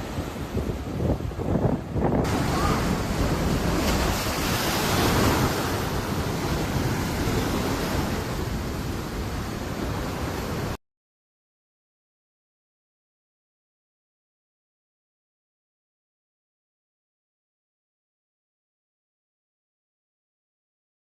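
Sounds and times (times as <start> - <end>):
storm surf breaking: 0.0 - 10.8
wind buffeting microphone: 0.0 - 10.8.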